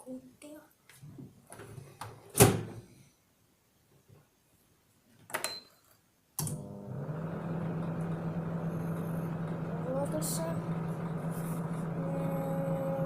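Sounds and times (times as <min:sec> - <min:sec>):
microwave oven humming: 0:06.4 - 0:13.0.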